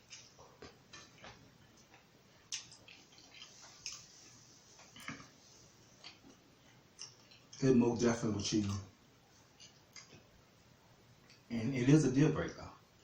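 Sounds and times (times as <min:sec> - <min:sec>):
chewing mouth clicks and smacks: 0:00.0 - 0:04.1, 0:06.0 - 0:07.6, 0:09.6 - 0:10.3.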